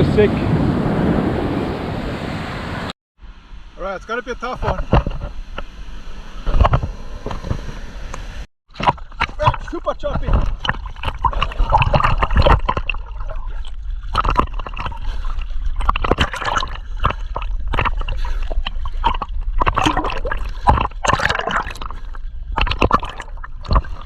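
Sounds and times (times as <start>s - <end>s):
sea water splashing and gurgling: 8.6s - 24.0s.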